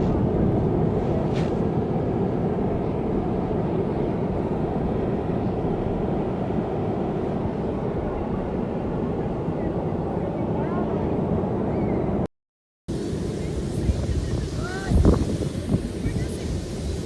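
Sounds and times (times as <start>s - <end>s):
beach surf: 12.9s - 17.0s.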